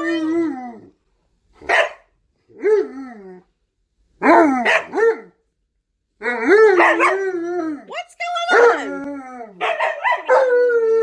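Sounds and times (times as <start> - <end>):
dog barking: 1.6 - 2.1, 4.3 - 5.4, 6.8 - 7.2, 9.6 - 10.5
dog howling woo calls: 8.6 - 11.0.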